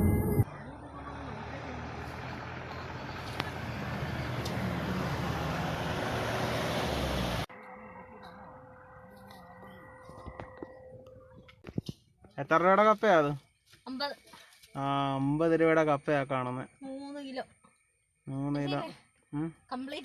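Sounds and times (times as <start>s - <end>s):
car road and wind noise: 0.0s - 7.5s.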